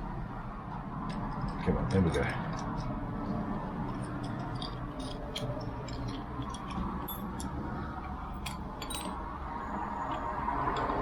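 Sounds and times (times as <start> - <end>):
metallic clicks of lock parts: 4.0 - 9.2.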